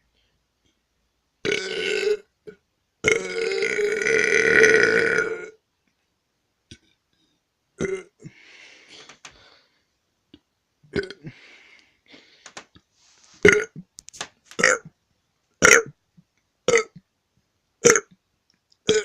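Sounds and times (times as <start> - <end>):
boy burping: 1.4 - 5.6, 7.8 - 8.3, 10.9 - 11.4, 13.4 - 13.9, 14.6 - 14.9, 15.6 - 16.0, 16.7 - 17.0, 17.8 - 18.2
breathy noise: 8.2 - 10.0, 11.0 - 13.9.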